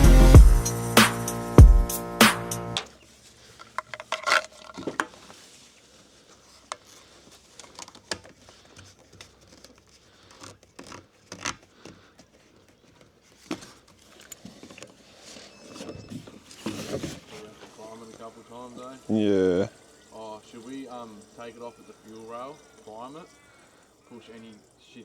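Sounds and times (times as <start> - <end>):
small parts and tools clicking: 2.8 - 5.5, 6.3 - 25.0.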